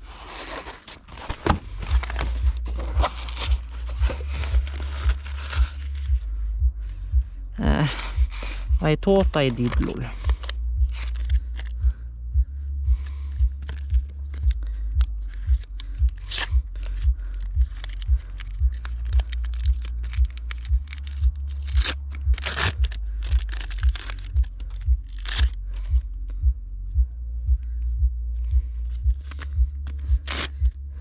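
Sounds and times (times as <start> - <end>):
clicks and scrapes on plastic: 0.0 - 6.2, 13.4 - 25.8, 28.9 - 30.7
music with heavy bass beat: 1.4 - 31.0.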